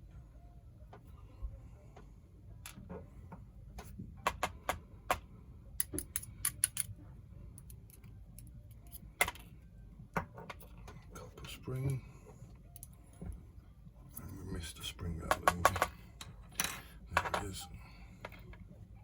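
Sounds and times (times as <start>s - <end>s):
small metal clicks of lock parts: 5.8s - 6.9s.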